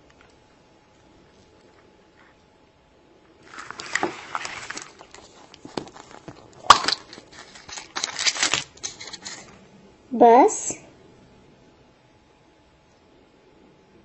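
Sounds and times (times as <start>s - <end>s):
plastic crinkling and crackling: 3.4s - 9.5s.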